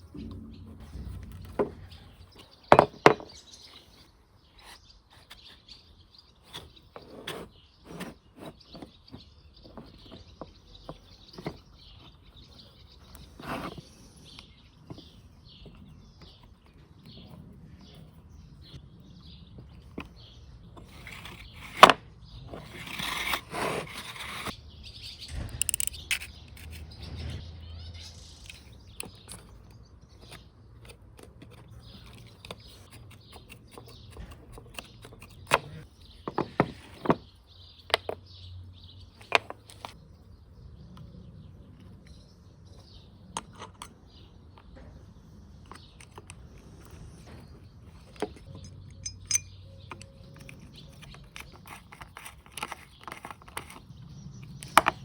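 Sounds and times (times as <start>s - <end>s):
birds chirping: 0.0s - 55.0s
knocks and clicks of engine parts: 25.2s - 27.2s.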